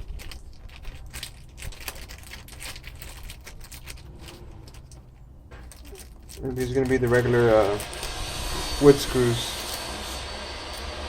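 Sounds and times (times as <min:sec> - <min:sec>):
small screws clicking and rattling: 0:00.0 - 0:08.1.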